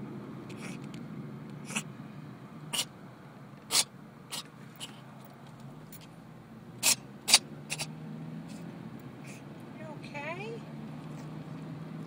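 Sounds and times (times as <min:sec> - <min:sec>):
cat sneezing: 0:00.5 - 0:00.8, 0:01.6 - 0:01.9, 0:02.7 - 0:02.9, 0:03.7 - 0:05.0, 0:06.8 - 0:07.9.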